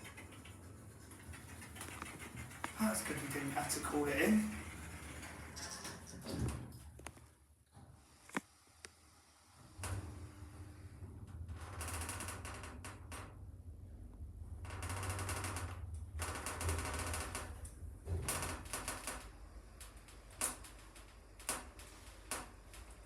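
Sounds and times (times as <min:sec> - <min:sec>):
fast rattling clicks: 0:00.0 - 0:06.0.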